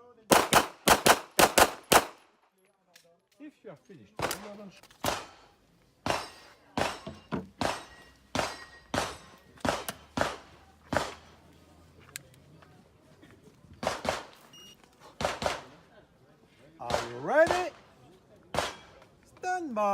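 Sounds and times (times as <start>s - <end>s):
handgun shots: 0.3s - 2.2s, 6.0s - 11.2s.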